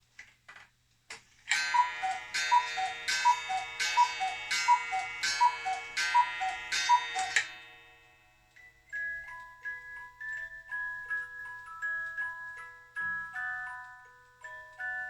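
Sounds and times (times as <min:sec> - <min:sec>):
cuckoo clock calls: 0:01.5 - 0:07.7.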